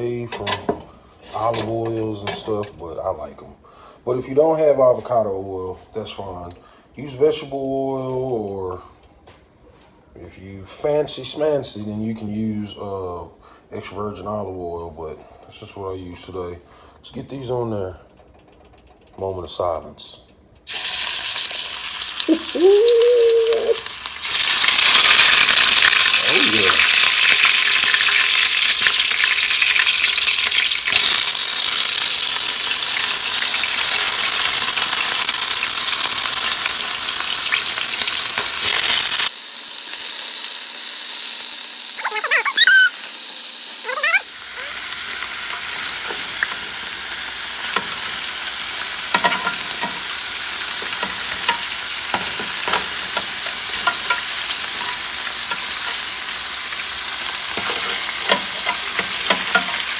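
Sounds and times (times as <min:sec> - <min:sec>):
meat sizzling in oil: 0:20.7 - 0:59.9.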